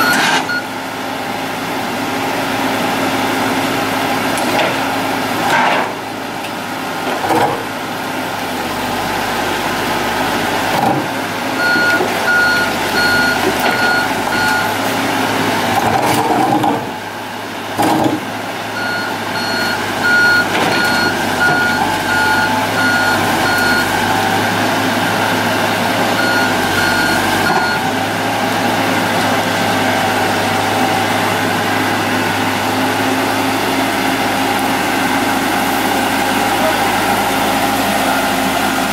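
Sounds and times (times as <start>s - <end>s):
reversing alarm beeping: 0.0s - 0.7s, 11.6s - 14.8s, 18.8s - 24.1s, 26.2s - 28.0s
diesel machinery running: 0.0s - 38.9s.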